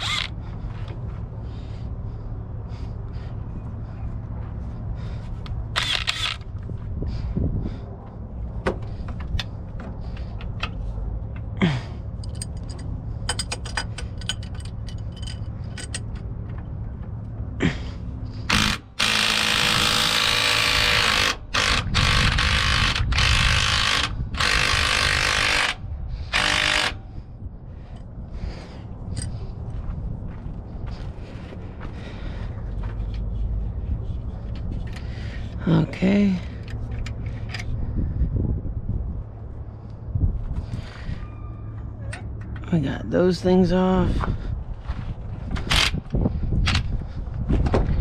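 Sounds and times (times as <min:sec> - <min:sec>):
hand tools clicking on metal: 0:12.2 - 0:16.2
power tool bursts: 0:18.5 - 0:27.0.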